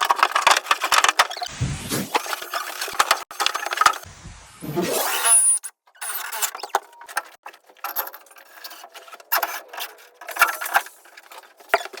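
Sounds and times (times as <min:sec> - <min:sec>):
scraping and rubbing: 0:00.2 - 0:05.3.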